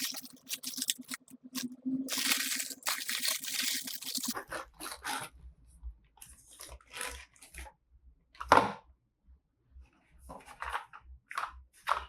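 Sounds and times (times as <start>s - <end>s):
cardboard and plastic crinkling: 0.0s - 1.2s, 2.1s - 5.2s
packaging rustling and tearing: 0.0s - 5.2s.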